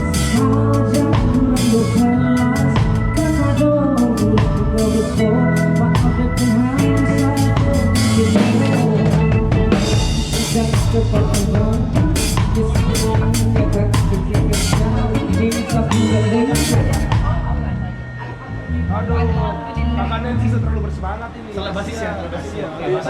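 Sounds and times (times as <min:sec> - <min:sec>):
drum kit: 0:00.0 - 0:18.0
live band playing: 0:00.0 - 0:21.0.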